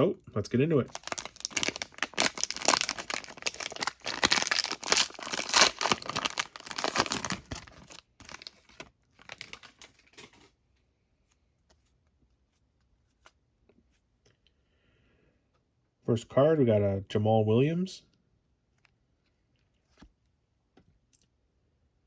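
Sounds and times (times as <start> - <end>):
card wrapper tearing and crinkling: 0.8 - 10.5.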